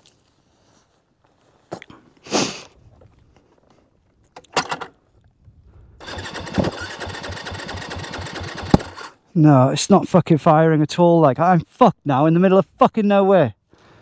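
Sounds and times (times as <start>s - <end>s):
electric starter cranking engine: 4.4s - 5.0s, 6.0s - 9.2s.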